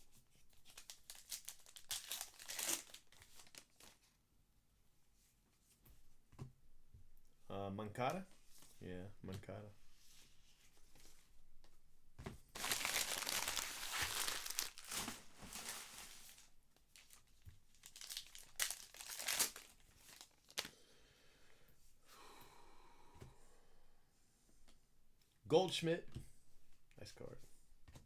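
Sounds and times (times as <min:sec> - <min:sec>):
wrapper crinkling and tearing: 0:00.5 - 0:04.0, 0:12.5 - 0:20.7.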